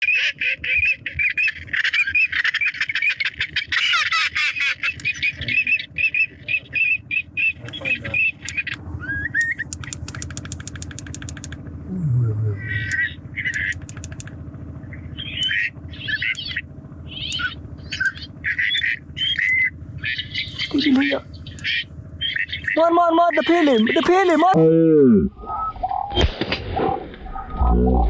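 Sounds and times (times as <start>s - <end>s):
birds chirping: 0.0s - 11.6s, 12.5s - 24.6s, 25.2s - 26.2s
fast clicks: 4.8s - 5.2s, 8.4s - 8.8s, 9.4s - 11.6s, 12.9s - 14.4s.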